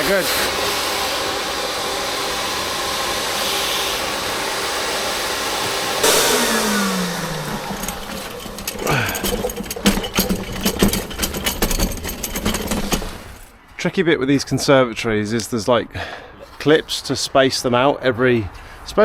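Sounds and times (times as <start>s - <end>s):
vacuum motor whining: 2.2s - 10.6s
loud burst: 6.0s - 8.8s
hard knocks and clatters: 6.0s - 13.5s.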